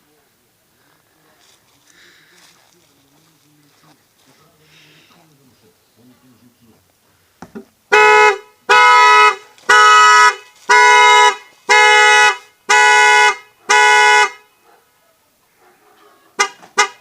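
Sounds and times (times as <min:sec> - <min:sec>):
car horn blasts: 0:07.9 - 0:14.6, 0:16.4 - 0:17.0.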